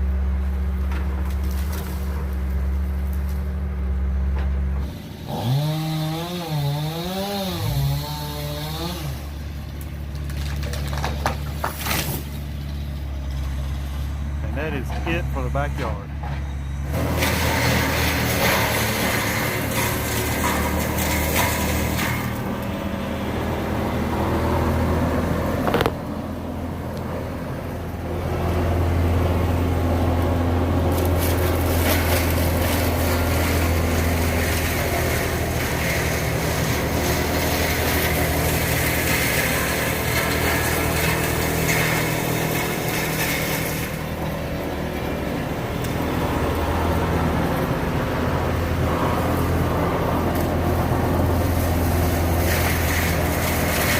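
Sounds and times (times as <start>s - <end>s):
diesel machinery engine hum: 0.0s - 53.9s.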